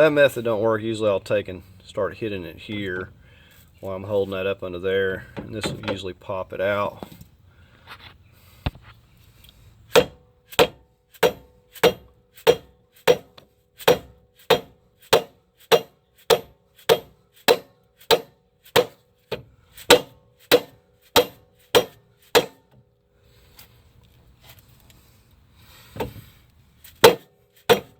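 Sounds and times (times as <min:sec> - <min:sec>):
hammer striking metal: 0:09.9 - 0:19.0, 0:19.9 - 0:22.6, 0:27.0 - 0:27.9.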